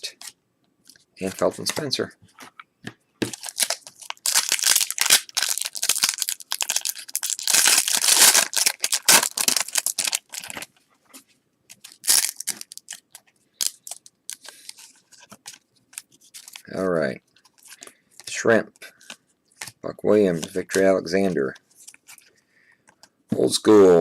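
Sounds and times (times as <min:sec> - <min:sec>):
card pack wrapper crinkling: 0:03.2 - 0:10.7, 0:11.7 - 0:16.8.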